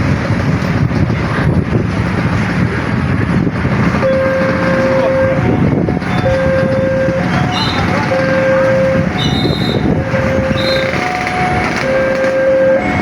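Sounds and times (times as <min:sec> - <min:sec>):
passing train rumble: 0:00.0 - 0:13.0
train horn: 0:06.1 - 0:13.0.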